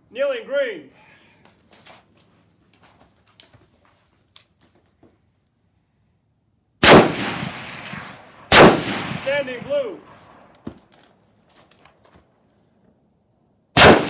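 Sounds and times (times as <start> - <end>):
faint clicks and rustles: 1.4 - 5.8, 10.1 - 13.0
echoing rifle shot: 6.8 - 10.5, 13.8 - 14.0.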